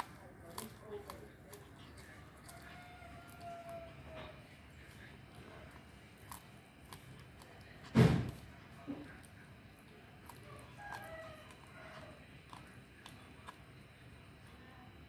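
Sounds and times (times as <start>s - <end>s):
heavy thump: 7.9s - 8.4s.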